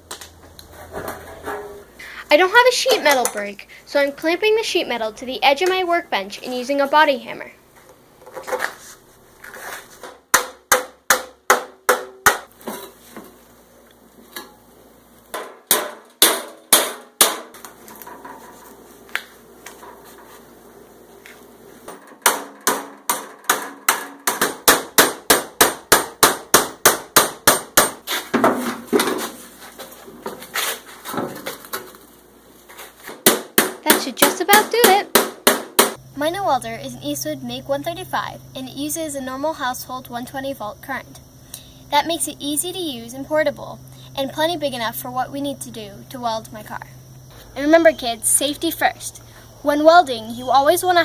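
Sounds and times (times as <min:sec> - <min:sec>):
hammer striking sheet steel: 0:15.3 - 0:17.6, 0:21.9 - 0:29.2.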